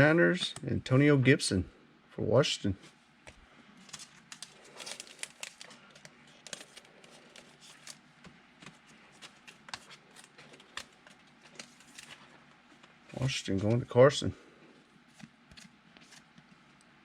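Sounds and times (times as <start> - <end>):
cards and packaging crinkling: 3.8 - 12.4.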